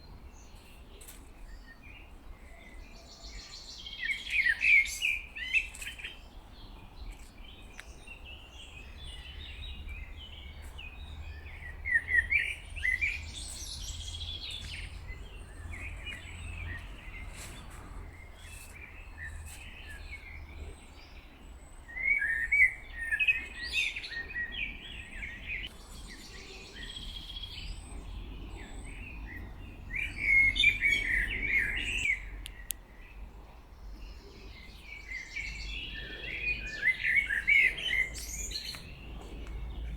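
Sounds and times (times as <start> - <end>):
songbirds singing: 0.0 - 39.9.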